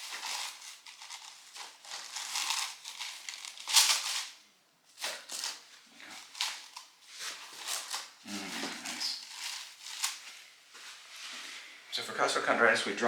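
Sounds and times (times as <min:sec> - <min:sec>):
rustling on treatment table: 0:00.0 - 0:11.8.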